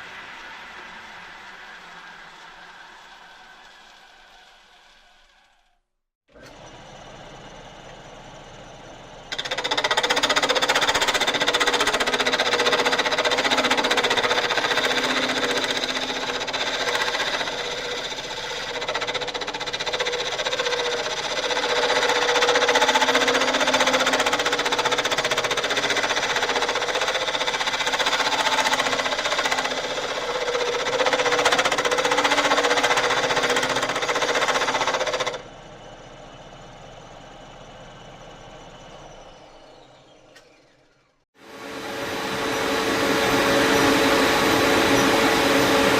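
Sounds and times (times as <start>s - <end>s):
metalworking lathe running: 6.3s - 35.7s, 41.4s - 45.9s.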